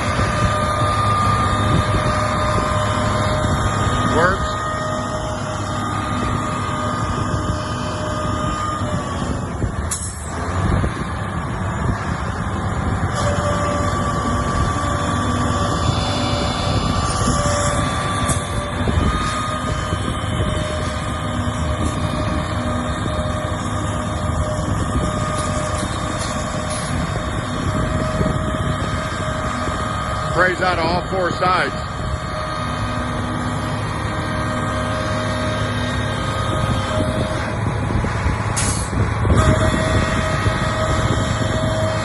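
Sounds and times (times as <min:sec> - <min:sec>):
diesel engine running: 0:00.0 - 0:42.0.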